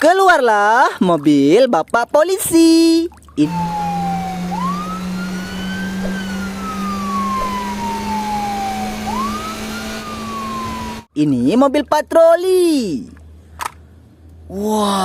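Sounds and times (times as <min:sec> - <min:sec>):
police siren wailing: 0:03.4 - 0:11.1
low hum: 0:03.4 - 0:11.2.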